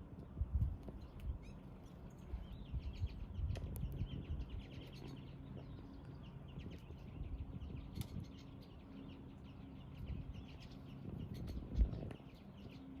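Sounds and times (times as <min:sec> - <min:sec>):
low steady hum: 0:00.0 - 0:13.0
songbirds chirping: 0:00.0 - 0:13.0.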